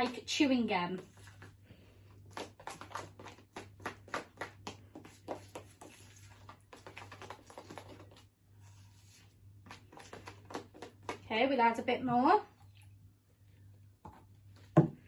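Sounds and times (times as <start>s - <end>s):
sticky clicks of slime mixing: 2.2s - 8.1s.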